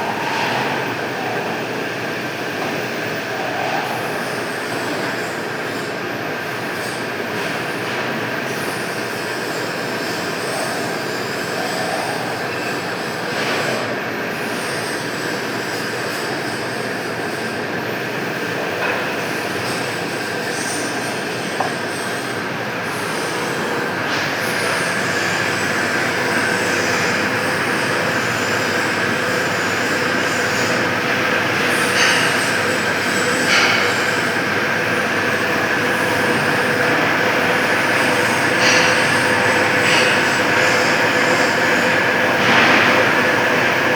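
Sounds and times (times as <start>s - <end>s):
lathe cutting metal: 17.6s - 43.9s.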